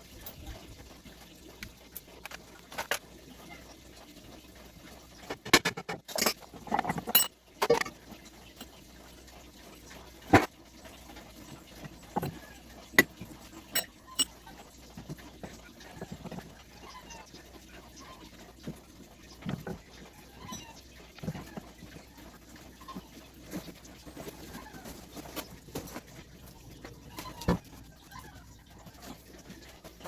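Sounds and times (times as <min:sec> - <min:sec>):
metal parts and tools clinking: 0:01.6 - 0:03.0, 0:05.3 - 0:07.9, 0:13.0 - 0:15.1.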